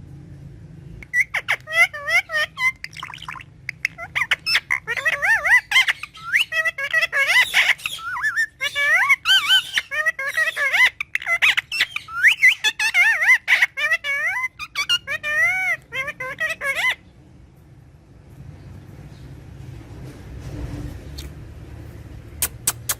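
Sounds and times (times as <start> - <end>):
parrot chattering and squawking: 1.0 - 17.1, 22.2 - 22.9.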